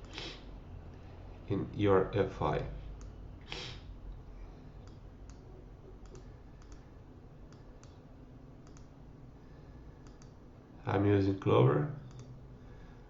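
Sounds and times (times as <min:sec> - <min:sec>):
low steady hiss: 0:00.0 - 0:13.0
computer mouse clicking: 0:06.0 - 0:06.9, 0:07.5 - 0:08.0, 0:08.6 - 0:08.9, 0:10.0 - 0:10.4, 0:12.0 - 0:12.4.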